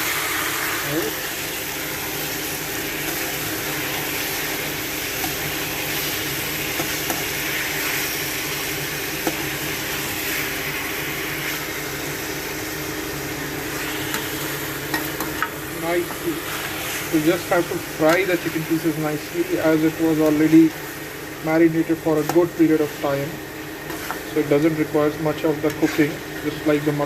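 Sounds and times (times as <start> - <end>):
chicken sizzling in hot oil: 0.0 - 27.0.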